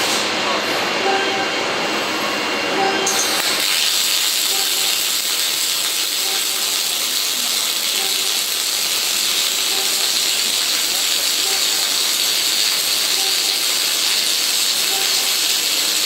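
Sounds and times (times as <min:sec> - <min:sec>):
welding arc hissing crackle: 0:03.4 - 0:16.0.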